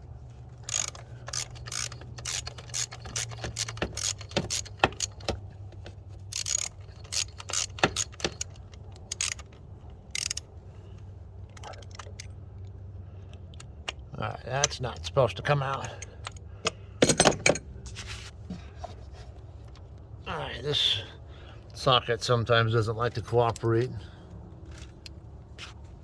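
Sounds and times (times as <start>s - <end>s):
low steady hum: 0.0s - 26.0s
ratchet wrench clicking: 0.6s - 5.4s, 6.3s - 10.5s.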